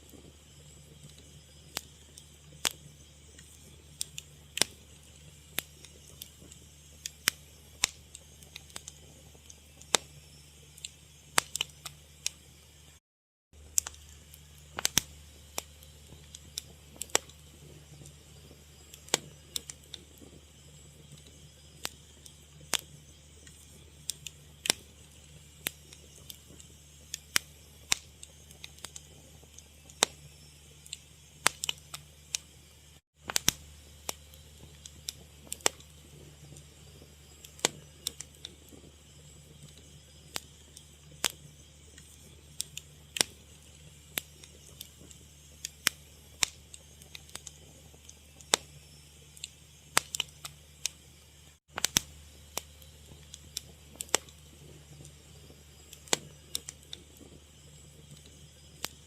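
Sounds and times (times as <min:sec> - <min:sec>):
wood fire crackling: 0:00.0 - 0:13.0, 0:13.6 - 0:59.0
low steady hum: 0:13.6 - 0:59.0.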